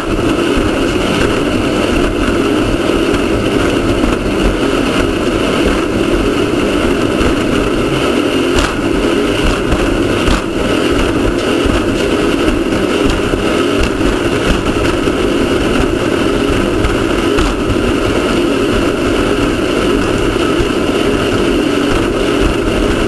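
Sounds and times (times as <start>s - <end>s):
race car engine running: 0.0s - 23.0s
sharp knocks: 8.5s - 10.7s, 16.8s - 17.8s.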